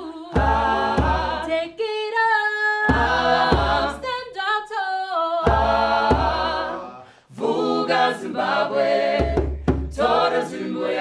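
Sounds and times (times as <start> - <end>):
choir singing in harmony: 0.0 - 1.8, 2.9 - 4.2, 5.4 - 11.0.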